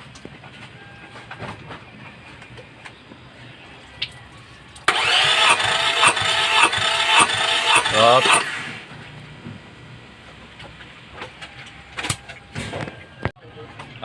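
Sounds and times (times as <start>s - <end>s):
starter motor cranking engine: 4.9s - 9.0s.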